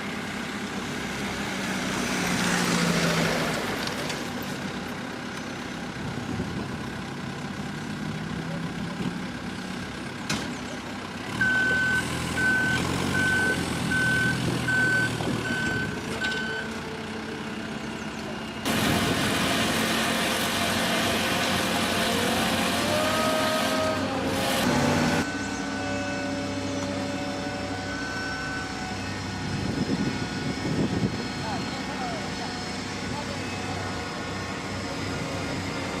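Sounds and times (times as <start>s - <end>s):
heavy vehicle engine running: 0.0s - 36.0s
reversing alarm beeping: 11.4s - 16.8s, 24.9s - 30.7s.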